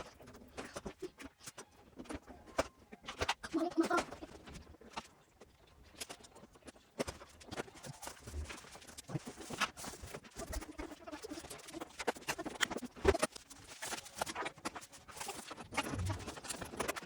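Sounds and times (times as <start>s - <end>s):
scratching of hard parts: 0.0s - 17.0s.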